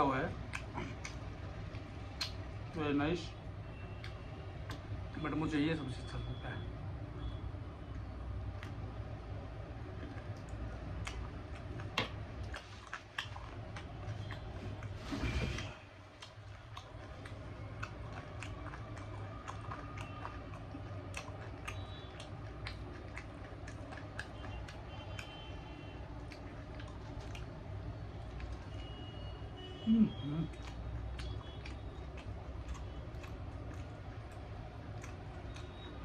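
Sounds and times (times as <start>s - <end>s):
low background hum: 0.0s - 36.0s
person chewing food: 0.3s - 2.7s, 7.9s - 36.0s
wet mouth clicks and smacks: 0.3s - 2.7s, 3.9s - 5.1s, 9.8s - 15.0s, 16.0s - 29.0s, 30.1s - 36.0s.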